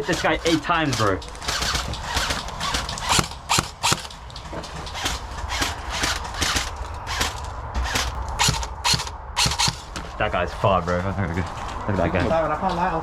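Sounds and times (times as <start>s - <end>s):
airsoft gun shots: 1.4s - 4.2s, 5.0s - 9.9s.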